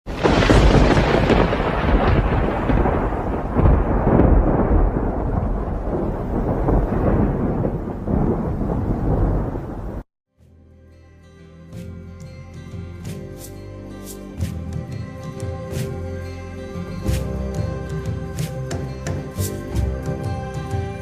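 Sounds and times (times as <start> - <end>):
loud deep rumbling: 0.1 - 10.0.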